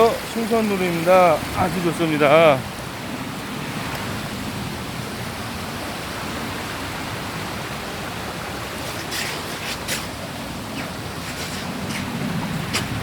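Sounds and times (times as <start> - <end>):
stream flowing water: 0.0 - 13.0.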